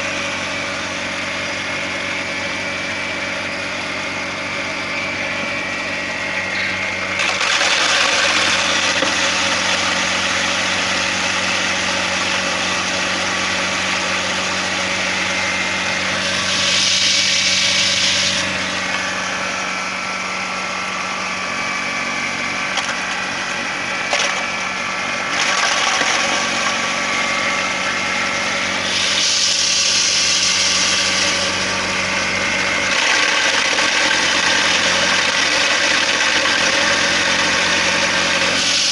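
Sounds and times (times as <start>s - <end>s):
grinder motor humming: 0.0s - 38.9s
hissy grinding: 16.0s - 19.5s, 25.3s - 38.9s.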